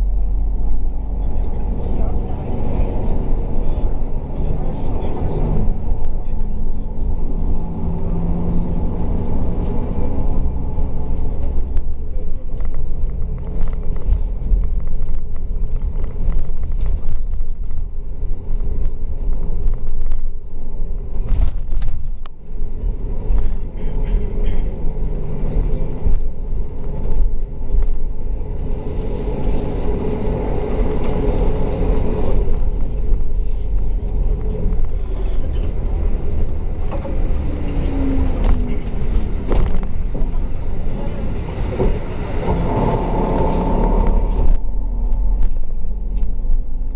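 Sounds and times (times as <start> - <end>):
bus engine running: 0.0 - 46.9
road rumble: 0.0 - 46.9.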